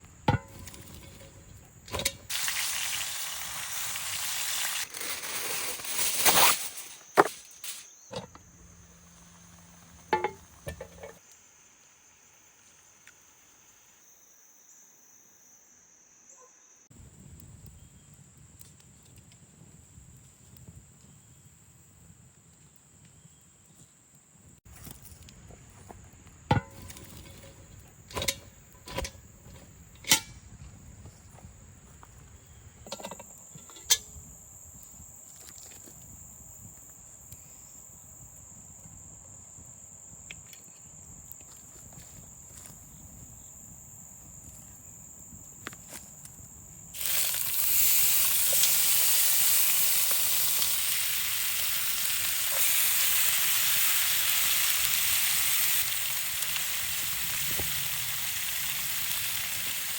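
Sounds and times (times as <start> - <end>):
meat sizzling in hot fat: 2.2 - 6.0, 46.9 - 59.9.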